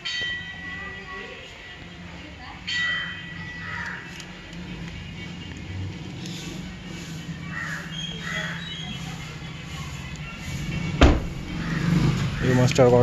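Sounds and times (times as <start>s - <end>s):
background music: 1.9s - 13.0s
sharp knock: 11.0s - 11.4s.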